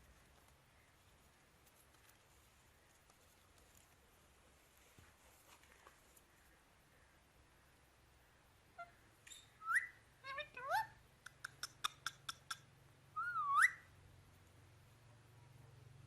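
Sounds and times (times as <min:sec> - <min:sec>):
parrot whistling: 0:09.3 - 0:10.0, 0:13.2 - 0:13.8.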